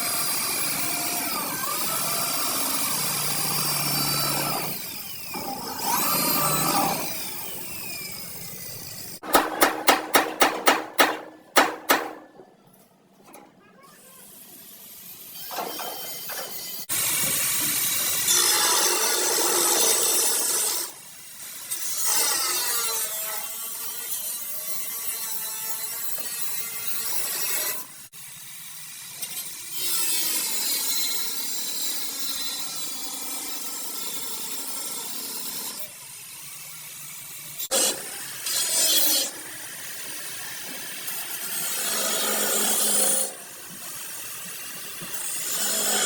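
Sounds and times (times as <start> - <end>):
grinder rasping on metal: 0.0 - 12.4, 29.3 - 46.0.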